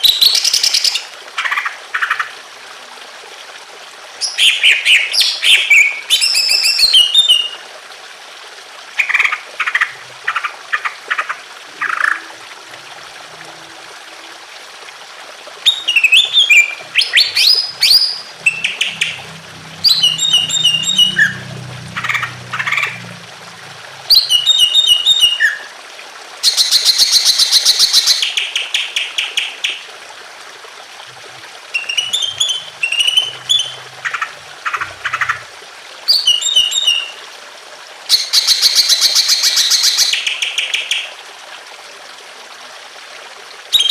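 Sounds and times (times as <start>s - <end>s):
faint trickle of running water: 0.0s - 43.9s
bird singing whistled phrases: 15.7s - 18.8s, 19.9s - 21.4s, 31.8s - 33.8s, 36.1s - 37.1s.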